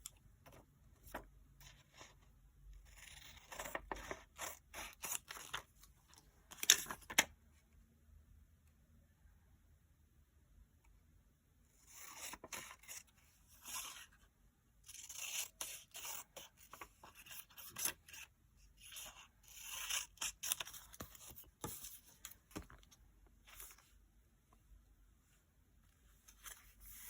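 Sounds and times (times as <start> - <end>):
paper rustling and scraping: 26.1 - 27.0.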